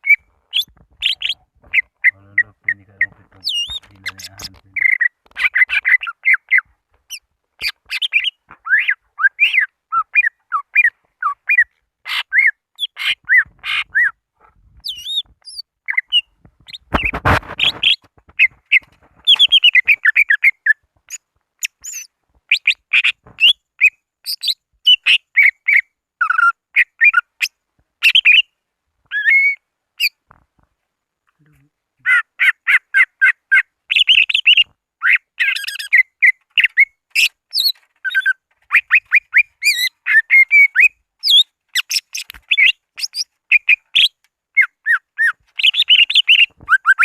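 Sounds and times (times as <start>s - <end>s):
bird singing chirps and trills: 0.0s - 14.2s, 14.8s - 17.0s, 33.0s - 47.0s.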